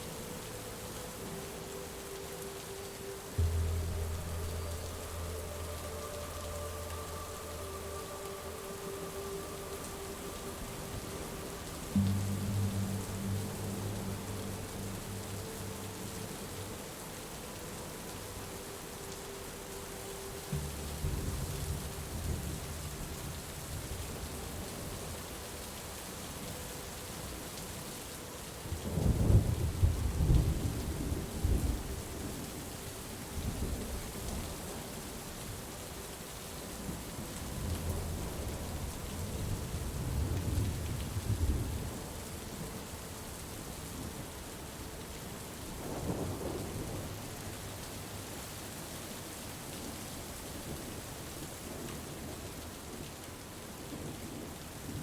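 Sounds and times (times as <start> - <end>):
steady falling rain: 0.0 - 55.0
low rolls of thunder: 28.8 - 34.8, 36.9 - 44.3, 45.7 - 48.9.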